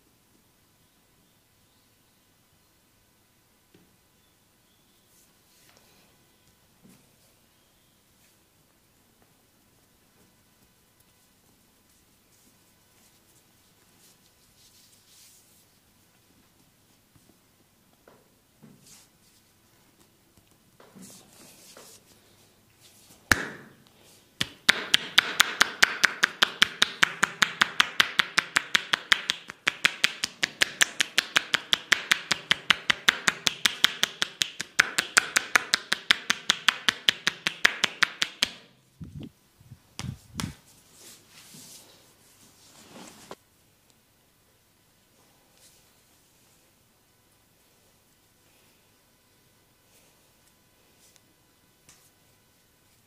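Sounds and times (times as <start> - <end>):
sharp slap: 23.3 - 23.8, 40.0 - 40.6
hands tapping on body: 24.4 - 38.7, 40.0 - 40.6.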